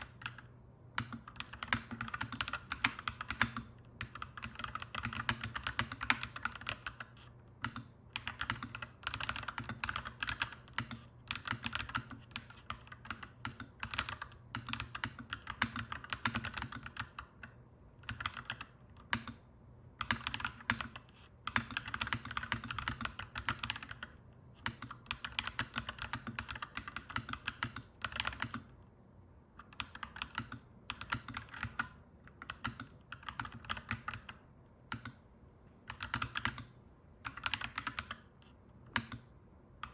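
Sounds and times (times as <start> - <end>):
mechanical keyboard typing: 0.0 - 19.4, 20.0 - 28.7, 29.6 - 35.2, 35.8 - 38.3, 38.9 - 39.9.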